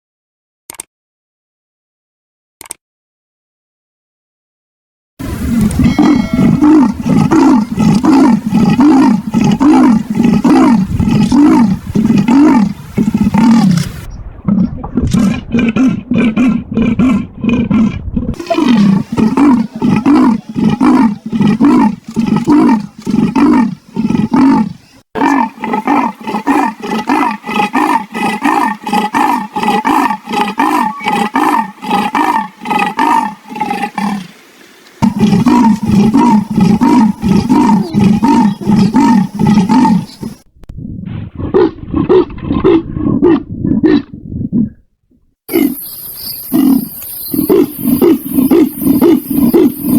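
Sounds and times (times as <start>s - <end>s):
leopard rasping grunts: 5.2s - 33.9s, 35.0s - 40.4s.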